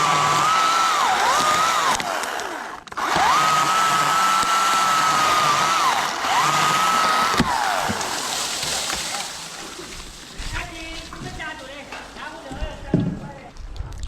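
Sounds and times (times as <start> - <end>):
chainsaw revving: 0.0 - 9.3.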